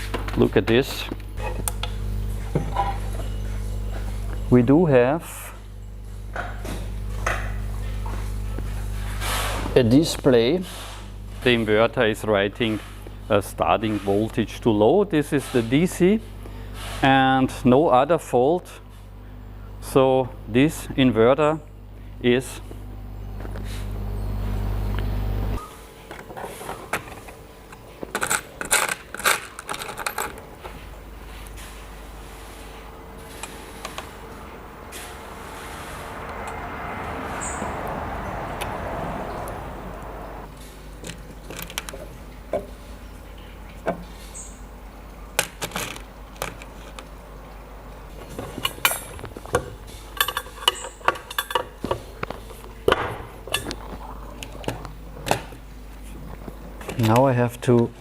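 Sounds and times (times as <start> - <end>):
low electrical hum: 0.0 - 58.0
metal parts and tools clinking: 27.7 - 30.8, 50.1 - 52.0.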